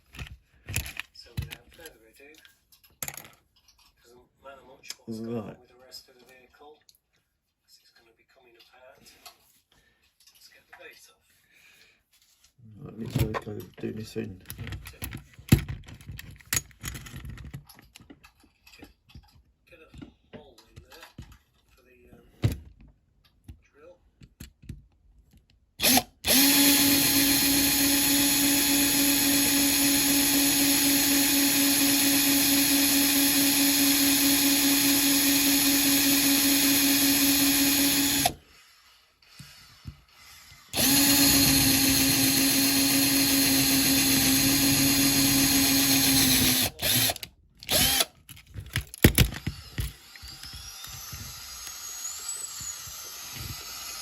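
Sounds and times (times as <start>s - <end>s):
electric drill drilling metal rivets: 25.8s - 38.4s, 39.2s - 54.0s.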